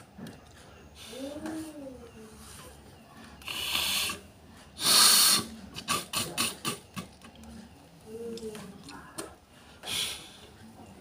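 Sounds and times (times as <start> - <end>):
person blowing air through nose: 4.8 - 5.5.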